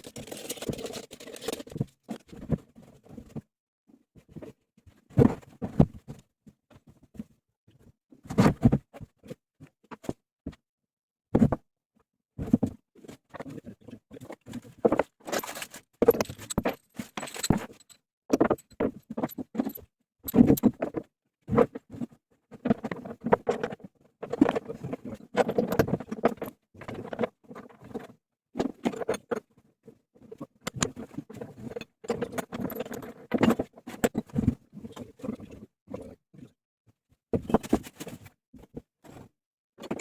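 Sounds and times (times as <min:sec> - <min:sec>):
metal parts and tools clinking: 0:00.0 - 0:02.2, 0:15.3 - 0:20.7.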